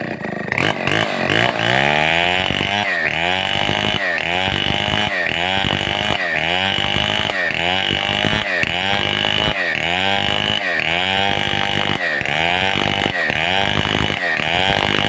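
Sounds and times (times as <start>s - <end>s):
chainsaw cutting timber: 0.0s - 15.0s.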